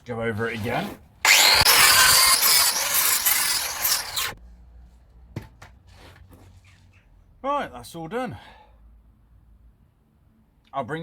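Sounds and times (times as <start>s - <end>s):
angle grinder grinding steel: 1.3s - 4.4s.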